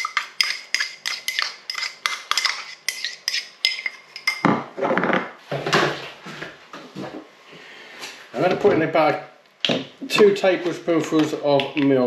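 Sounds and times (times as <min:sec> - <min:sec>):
spoon scraping stir in bowl: 0:00.0 - 0:04.4
metal spoon clinking on bowl: 0:00.0 - 0:04.5.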